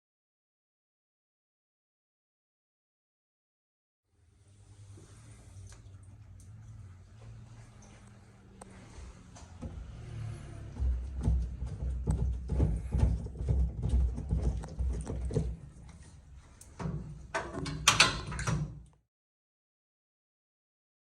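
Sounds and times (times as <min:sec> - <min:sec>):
washing machine motor humming: 0:04.6 - 0:18.8
tub knocking and clattering: 0:09.5 - 0:18.8.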